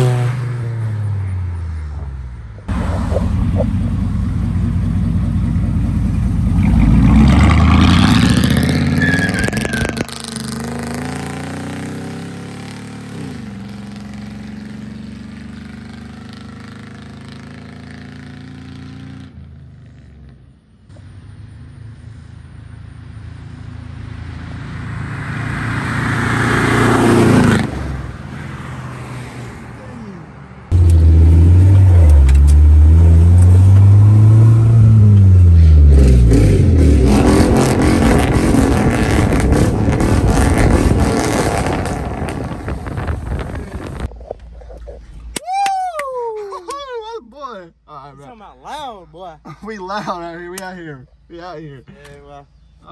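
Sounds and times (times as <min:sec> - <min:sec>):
truck with loud exhaust accelerating: 0:02.6 - 0:19.4, 0:29.7 - 0:44.9.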